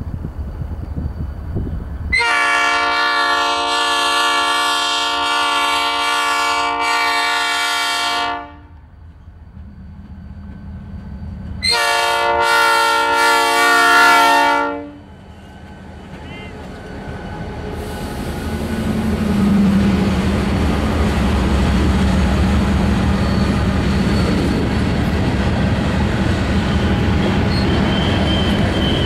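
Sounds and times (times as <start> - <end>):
train rumble: 0.0 - 29.0
locomotive air horn blasts: 2.1 - 8.8, 11.6 - 15.0.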